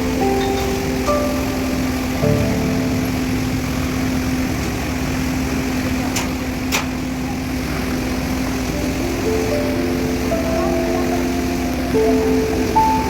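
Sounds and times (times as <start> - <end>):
pump engine droning: 0.0 - 13.0.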